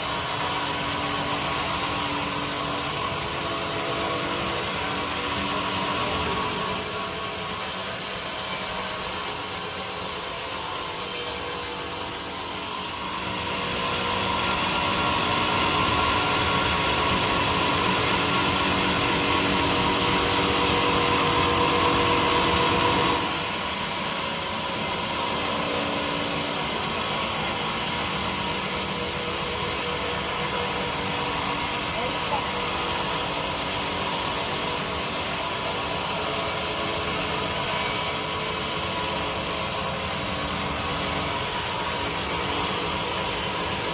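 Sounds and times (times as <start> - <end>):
power tool working wood: 0.0 - 43.9.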